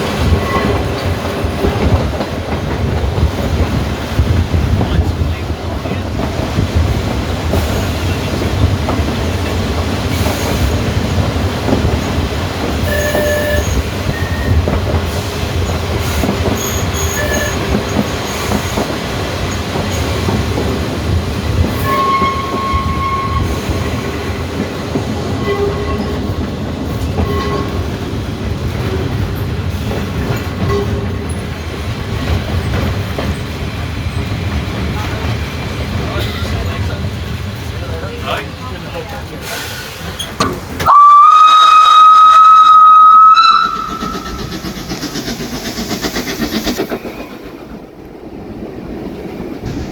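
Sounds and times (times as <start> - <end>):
tram wheels rumbling on track: 0.0 - 49.9
wheel squeals: 12.8 - 14.7, 15.7 - 18.8.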